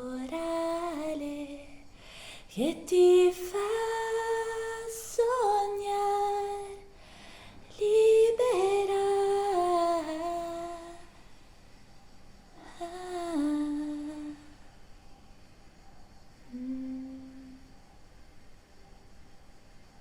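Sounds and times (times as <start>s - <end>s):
woman singing long notes: 16.5s - 17.7s.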